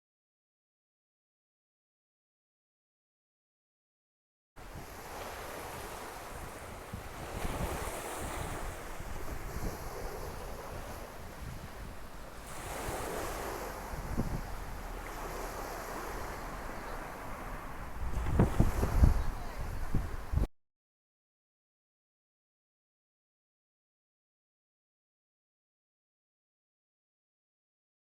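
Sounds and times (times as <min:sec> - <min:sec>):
sea waves breaking on beach: 0:04.6 - 0:20.5
wind buffeting microphone: 0:04.6 - 0:20.5.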